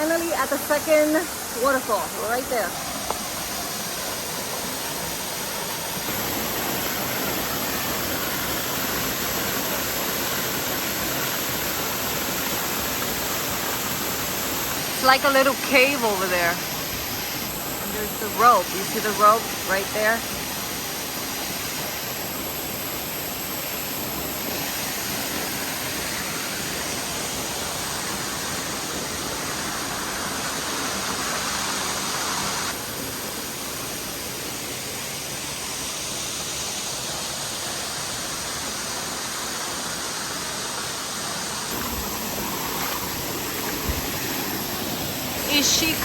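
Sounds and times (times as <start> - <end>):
waterfall rushing: 0.0 - 46.0.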